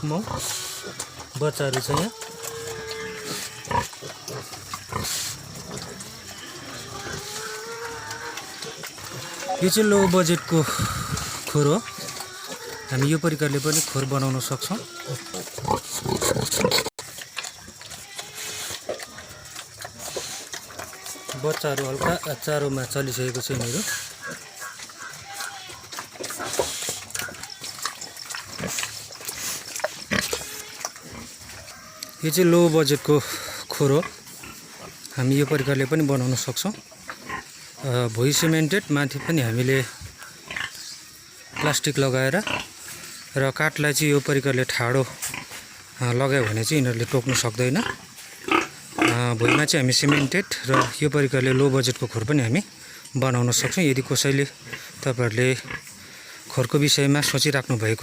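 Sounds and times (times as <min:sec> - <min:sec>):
piglets grunting: 0:00.0 - 0:16.9
pigs grunting and squealing: 0:00.0 - 0:58.0.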